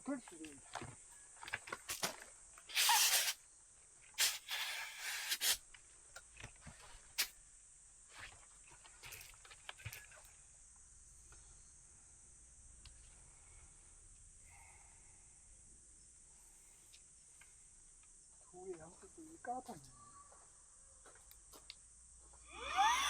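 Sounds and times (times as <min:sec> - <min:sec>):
insects chirring: 0:00.0 - 0:23.0
hissing rustling bursts: 0:02.7 - 0:03.4, 0:04.2 - 0:05.6.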